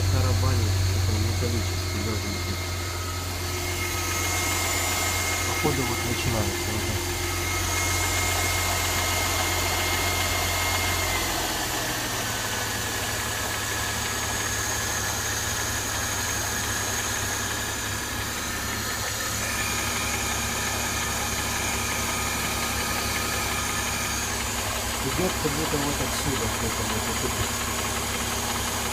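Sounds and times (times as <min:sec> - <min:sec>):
metallic engine rattling: 0:00.0 - 0:09.7, 0:17.2 - 0:28.9
car engine idling: 0:00.0 - 0:28.9.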